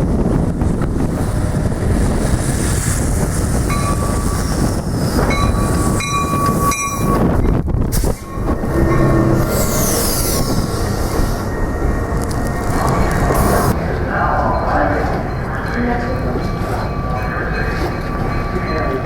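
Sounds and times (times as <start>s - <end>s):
train wheels rumbling on rail: 0.0s - 19.0s
high-pitched steady tones: 8.1s - 19.0s.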